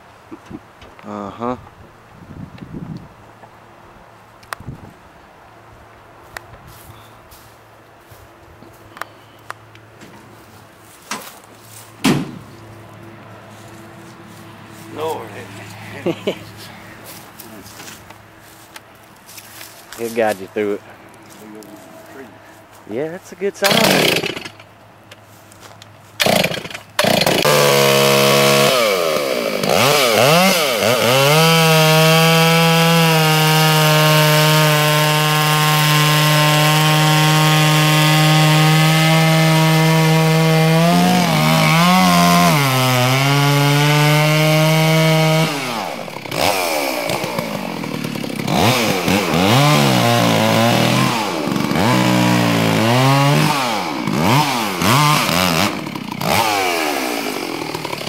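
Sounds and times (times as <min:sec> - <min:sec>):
chainsaw cutting wood: 0:23.6 - 0:24.7, 0:26.1 - 0:58.0.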